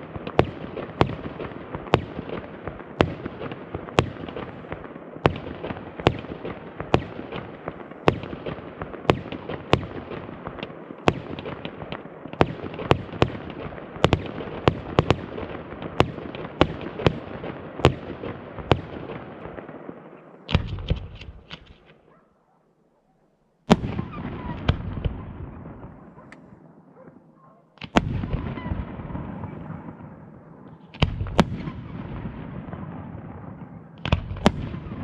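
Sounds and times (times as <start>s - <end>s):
fireworks bangs: 0.0s - 22.2s, 23.6s - 35.0s
fireworks crackling: 0.0s - 22.2s.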